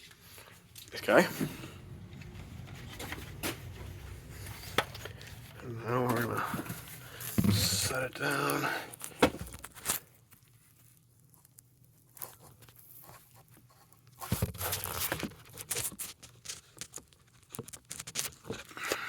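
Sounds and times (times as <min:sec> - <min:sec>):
knock of parts set down: 0:06.5 - 0:08.0, 0:09.2 - 0:09.6.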